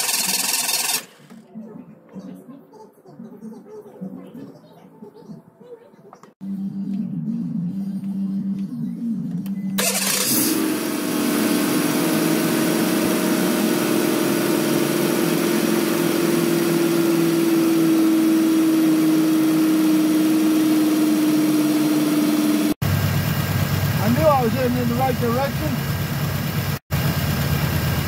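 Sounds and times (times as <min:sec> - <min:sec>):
car engine idling: 0:09.8 - 0:28.0.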